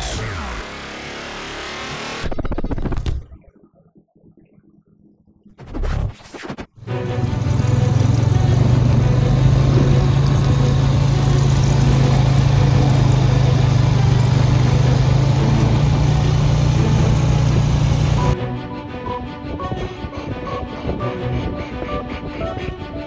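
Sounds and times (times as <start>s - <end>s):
vehicle engine running: 6.8s - 18.4s.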